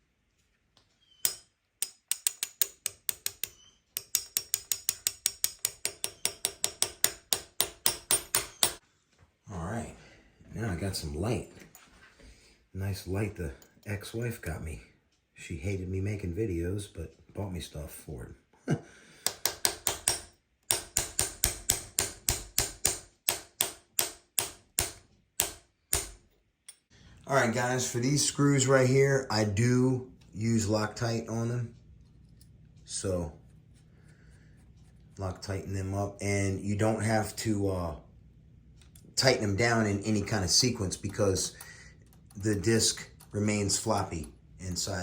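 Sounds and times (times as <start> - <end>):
rapid metallic tool clicks: 1.3 - 8.8.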